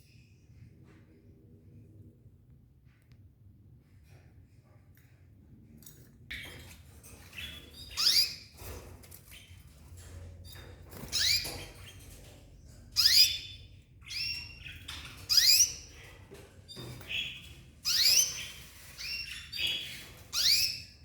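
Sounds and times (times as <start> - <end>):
pet birds chirping: 6.3 - 21.0.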